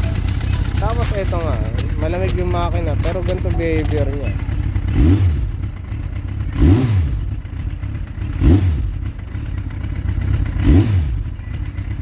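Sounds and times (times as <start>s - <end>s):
motorcycle engine idling and revving: 0.0s - 12.0s.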